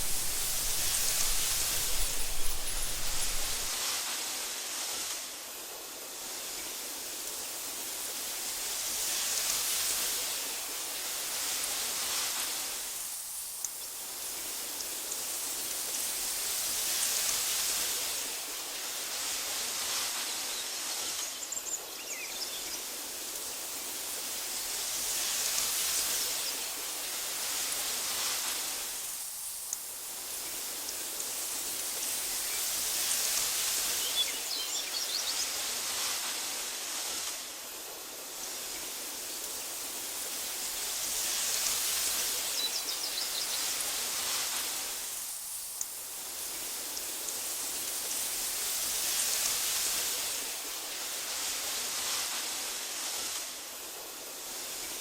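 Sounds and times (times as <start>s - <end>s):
faint high chirps: 0.0s - 3.7s
wind through grass: 0.0s - 55.0s.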